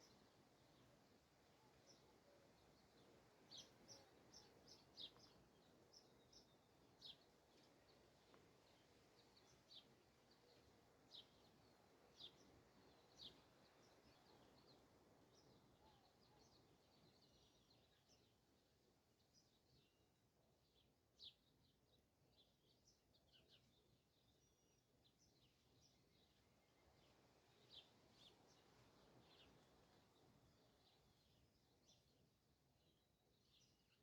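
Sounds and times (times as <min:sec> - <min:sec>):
low steady background hiss: 0:00.0 - 0:20.4.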